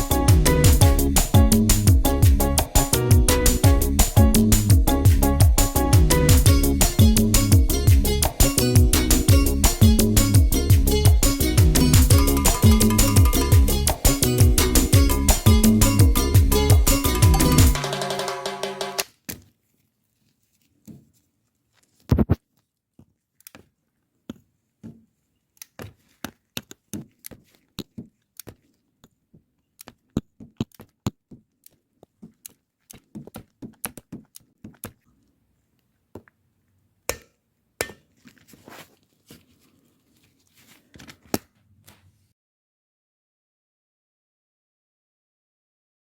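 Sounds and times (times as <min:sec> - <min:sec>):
tools clicking and tapping: 0:37.1 - 0:38.4.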